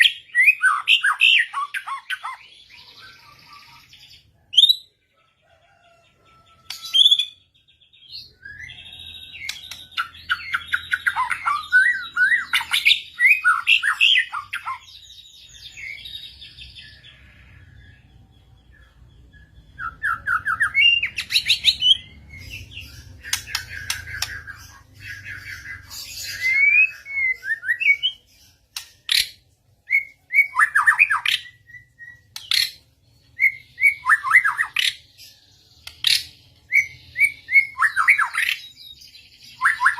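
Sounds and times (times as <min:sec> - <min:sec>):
songbird whistles and chatter: 0:19.4 - 0:32.8.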